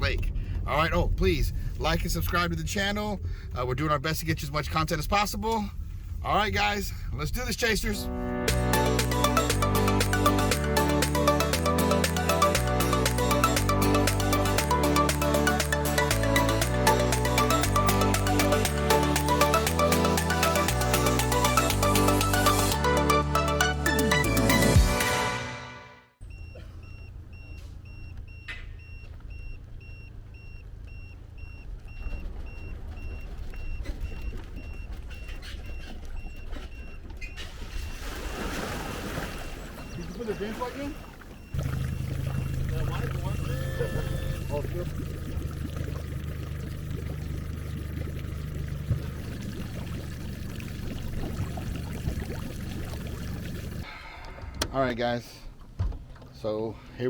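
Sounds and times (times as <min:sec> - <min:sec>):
intro music: 0:08.0 - 0:26.1
engine idling: 0:08.4 - 0:25.0, 0:39.8 - 0:54.8
vehicle warning beeps: 0:08.7 - 0:23.1, 0:26.2 - 0:38.1, 0:38.9 - 0:53.9
water pouring and splashing: 0:37.5 - 0:53.9.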